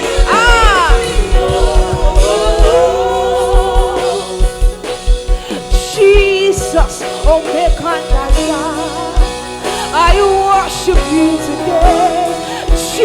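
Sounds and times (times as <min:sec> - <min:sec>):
voices singing in harmony: 0:00.0 - 0:05.3, 0:10.6 - 0:13.0
drum beat: 0:00.0 - 0:08.7.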